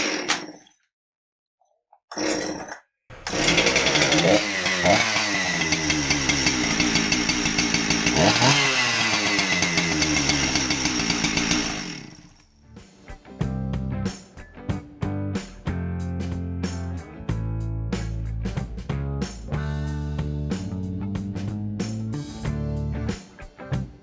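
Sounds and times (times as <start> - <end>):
chainsaw revving: 3.1 - 12.4.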